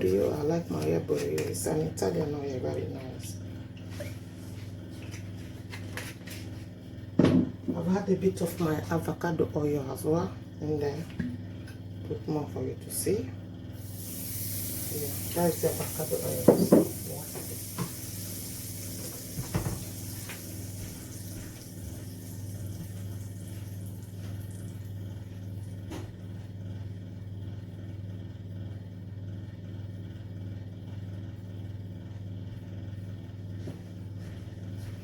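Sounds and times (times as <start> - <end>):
steady low hum: 0.0 - 35.0
oil hissing in a pot: 13.8 - 25.8.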